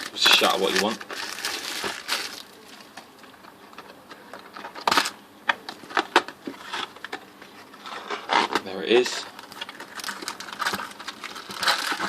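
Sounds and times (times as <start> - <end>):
plastic wrapping crinkling: 0.0 - 5.2, 6.1 - 12.0.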